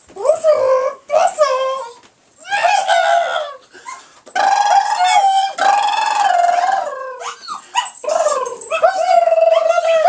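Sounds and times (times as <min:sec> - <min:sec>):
dog whining howls: 0:01.7 - 0:03.6, 0:04.4 - 0:10.0.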